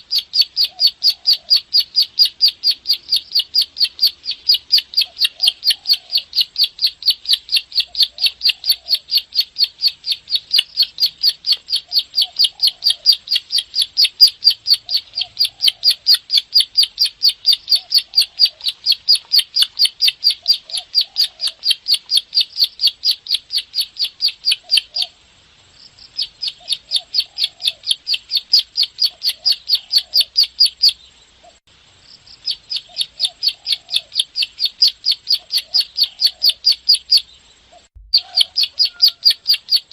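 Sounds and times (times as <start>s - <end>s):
bird calling with sharp clicking notes: 0.1s - 25.1s, 38.0s - 39.9s.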